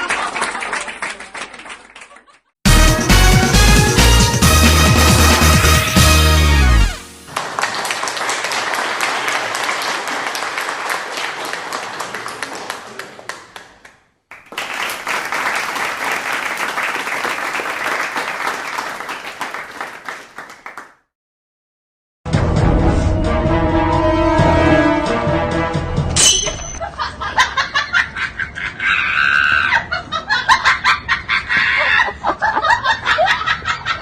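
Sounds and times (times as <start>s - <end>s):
crowd applauding: 0.0s - 2.4s, 7.2s - 21.0s.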